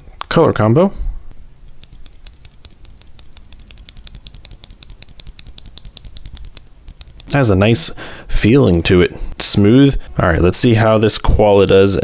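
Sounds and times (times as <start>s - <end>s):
mechanical keyboard switch clicks: 1.8s - 7.3s.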